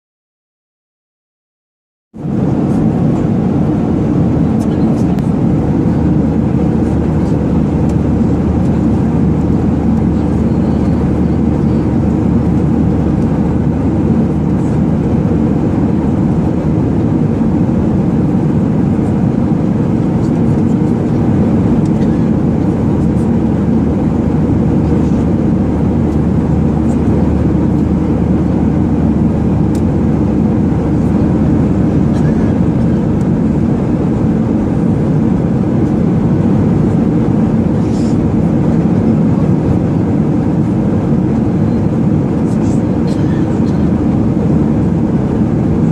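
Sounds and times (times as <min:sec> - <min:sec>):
airliner cabin engine drone: 0:02.2 - 0:45.9.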